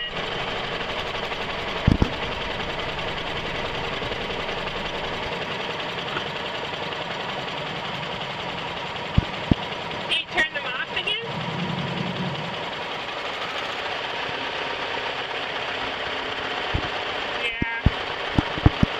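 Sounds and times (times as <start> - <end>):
car engine idling roughly: 0.0 - 18.9
short thumps: 17.6 - 18.9.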